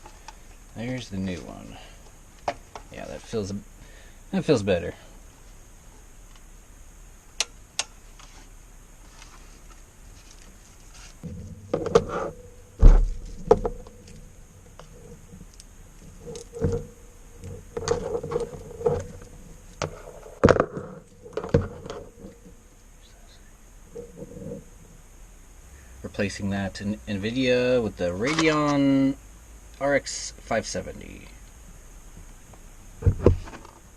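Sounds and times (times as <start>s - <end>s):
rustling: 0.0s - 25.1s
heavy thump: 11.2s - 15.5s
knocks and clatter: 11.2s - 22.4s.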